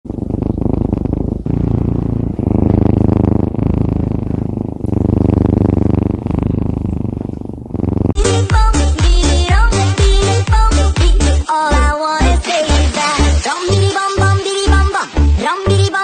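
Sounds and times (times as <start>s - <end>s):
cat purring loudly: 0.0s - 11.0s.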